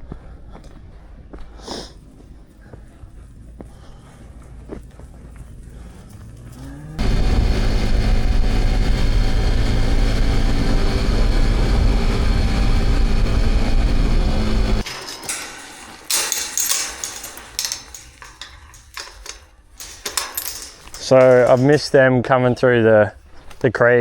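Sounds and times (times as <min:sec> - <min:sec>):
sharp knocks and clatters: 0:14.8 - 0:22.1.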